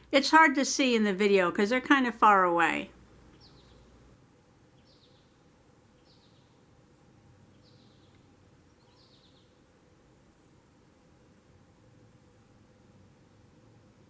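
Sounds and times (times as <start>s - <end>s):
low steady hiss: 0.0s - 14.0s
bird chirps: 3.3s - 4.0s, 4.8s - 5.4s, 6.0s - 6.6s, 7.5s - 9.6s.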